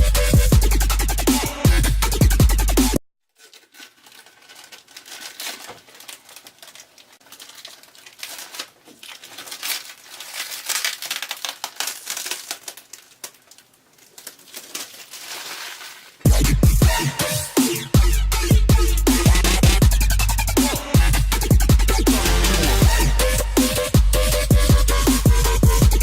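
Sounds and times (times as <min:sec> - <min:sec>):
plastic crinkling and rustling: 0:03.3 - 0:16.3.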